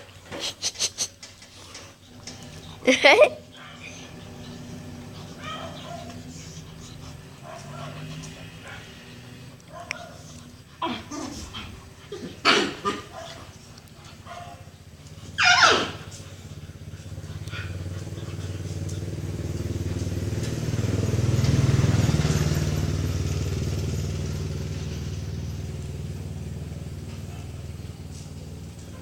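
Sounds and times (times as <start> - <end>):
motorcycle engine passing: 1.5 - 29.0
high cry falling in pitch: 15.4 - 16.1.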